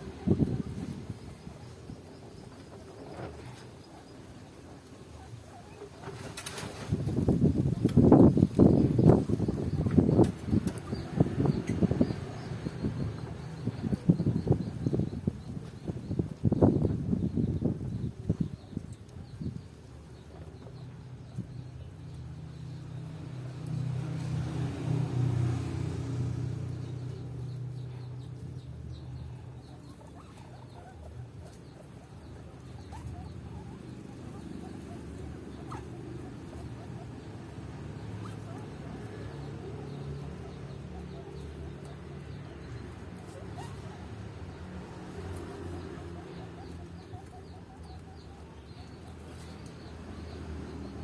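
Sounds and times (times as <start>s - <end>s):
birds calling: 0.0s - 51.0s
low engine hum: 6.9s - 51.0s
guinea pig eating: 29.2s - 49.8s.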